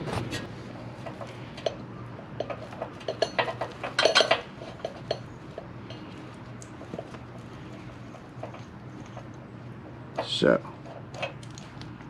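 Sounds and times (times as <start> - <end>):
metal chain and tools clinking: 2.4 - 5.3.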